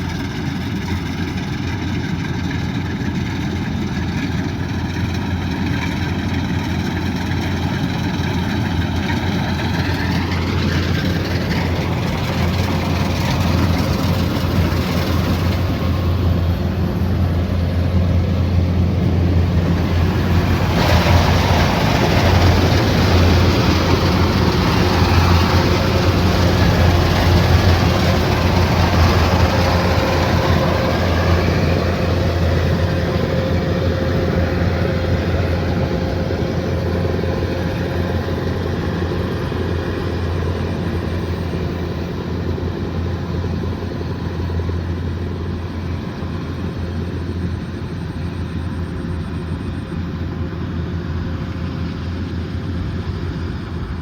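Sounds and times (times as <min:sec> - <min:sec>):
combine harvester engine drone: 0:00.0 - 0:54.0
dense mechanical rush: 0:06.2 - 0:45.0.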